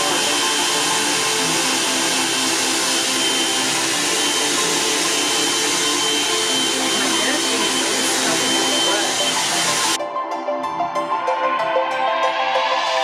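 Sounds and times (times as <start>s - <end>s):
hair dryer brush running: 0.0s - 10.0s.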